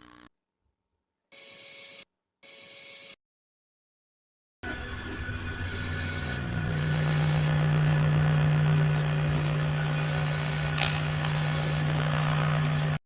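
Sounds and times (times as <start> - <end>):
low hum ufo sound effect: 4.6 - 13.0.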